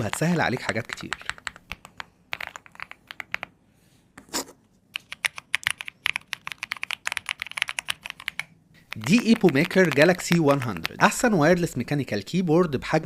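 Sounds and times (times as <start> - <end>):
mechanical keyboard typing: 0.0 - 3.5, 5.0 - 11.2.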